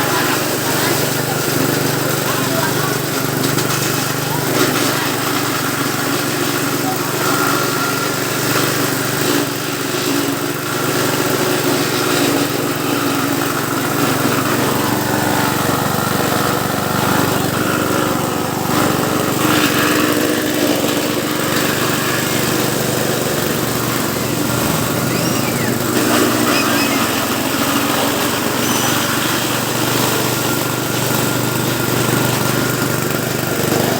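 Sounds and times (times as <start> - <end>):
chopper machine humming: 0.0 - 33.9.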